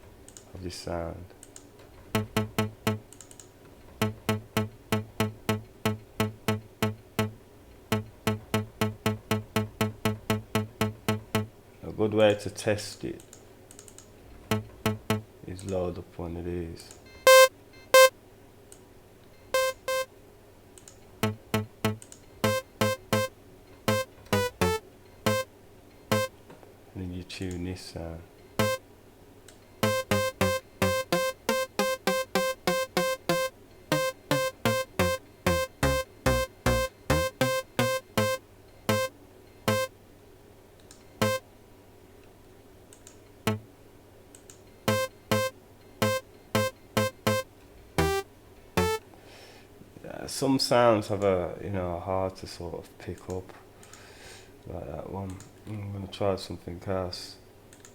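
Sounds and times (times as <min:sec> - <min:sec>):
faint mouse clicks: 0:01.3 - 0:01.7, 0:13.2 - 0:14.7, 0:20.8 - 0:22.2, 0:42.9 - 0:43.2, 0:44.3 - 0:44.6, 0:53.2 - 0:54.1, 0:55.2 - 0:55.8
short synthesizer notes: 0:02.2 - 0:03.1, 0:04.0 - 0:11.5, 0:14.5 - 0:15.3, 0:17.3 - 0:18.1, 0:19.6 - 0:20.1, 0:21.2 - 0:23.3, 0:23.9 - 0:25.5, 0:26.1 - 0:26.3, 0:28.6 - 0:28.8, 0:29.8 - 0:39.1, 0:39.7 - 0:39.9, 0:44.9 - 0:47.4, 0:48.0 - 0:48.2, 0:48.8 - 0:49.0.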